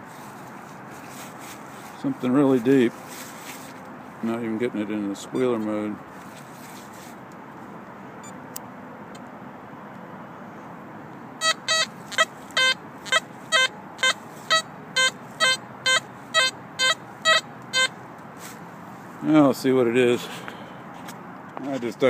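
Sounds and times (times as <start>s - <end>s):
metal detector beeping: 5.3s - 5.7s, 11.4s - 17.9s.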